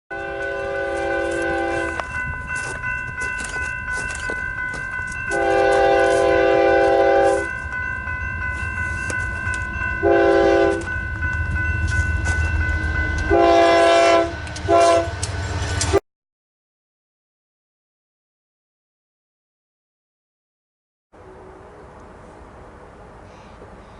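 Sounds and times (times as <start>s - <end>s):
locomotive air horn: 0.1s - 2.1s, 5.3s - 7.5s, 10.0s - 10.9s, 13.3s - 15.2s
locomotive rumbling: 0.1s - 16.0s.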